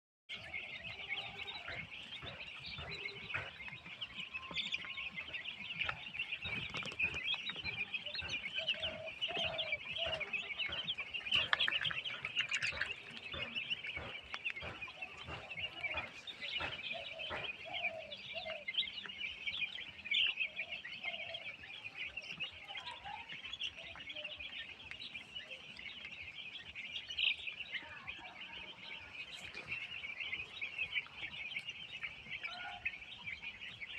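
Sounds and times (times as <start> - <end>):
chicken clucks: 0.3 - 33.9
chicks peeping: 0.3 - 33.9.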